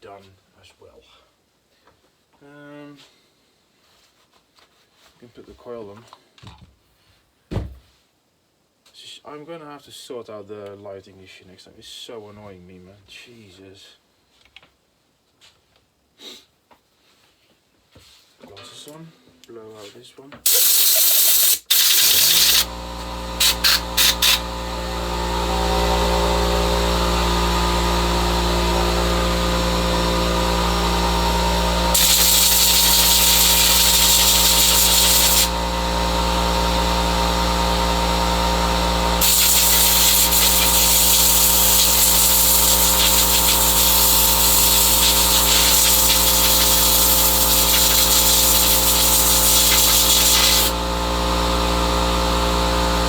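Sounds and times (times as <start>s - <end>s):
compressed air blow gun hissing: 20.5s - 24.6s, 31.4s - 35.6s, 39.2s - 50.8s
steady motor hum: 22.0s - 53.0s.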